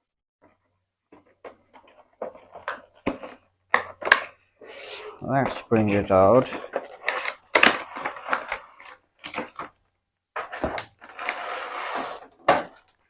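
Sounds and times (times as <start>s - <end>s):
packaging rustling: 6.3s - 13.0s
scraping: 10.4s - 13.0s.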